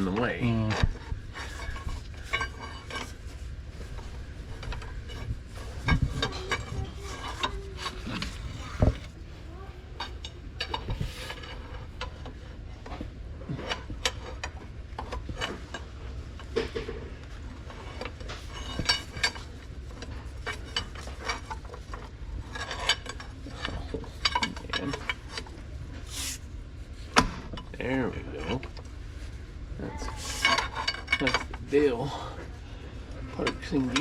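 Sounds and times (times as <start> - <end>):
low steady hum: 0.0 - 34.0.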